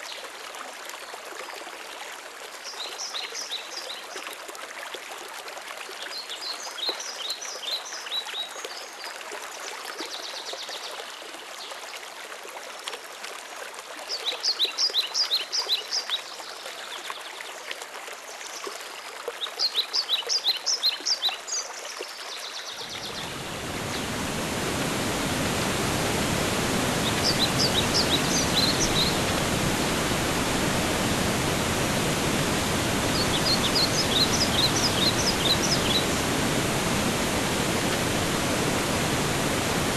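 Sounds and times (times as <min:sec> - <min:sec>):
running water rushing: 0:22.7 - 0:39.9
songbird singing: 0:22.8 - 0:39.9.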